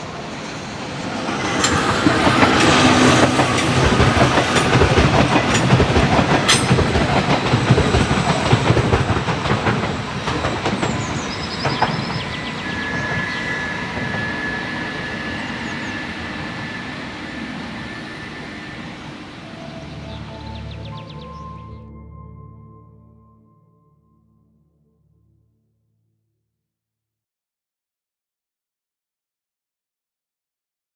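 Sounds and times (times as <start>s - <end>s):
train wheels clattering: 0.6s - 19.1s
thin high whine: 12.0s - 22.0s.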